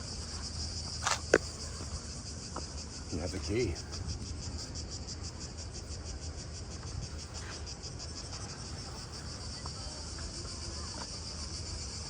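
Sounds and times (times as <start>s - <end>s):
cicadas buzzing: 0.0s - 12.0s.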